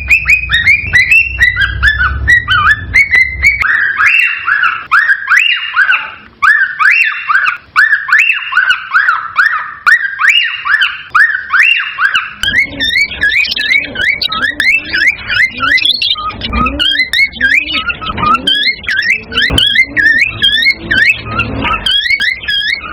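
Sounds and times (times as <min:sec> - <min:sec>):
low underlying sound: 0:00.0 - 0:03.8
cockatiel whistling: 0:00.0 - 0:22.9.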